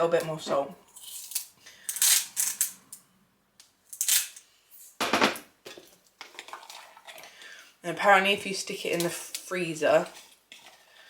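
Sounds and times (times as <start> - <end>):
scraping and crunching in a bowl: 9.0 - 11.0.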